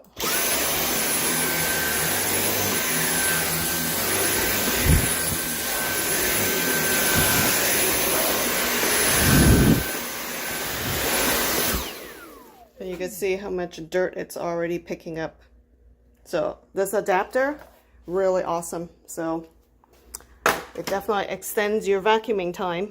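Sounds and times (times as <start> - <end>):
cordless vacuum running: 0.0 - 13.0.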